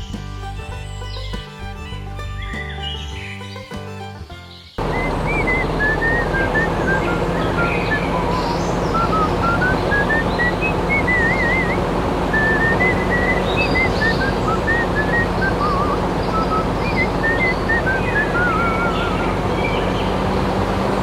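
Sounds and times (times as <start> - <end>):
dense steady backing music: 0.0 - 6.5
whistle-like melody: 0.0 - 20.1.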